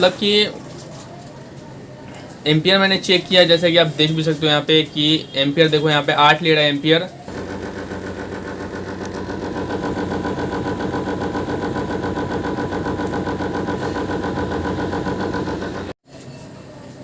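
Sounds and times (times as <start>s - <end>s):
air conditioner humming: 0.0s - 16.0s
fast rattling vibration: 7.3s - 16.0s.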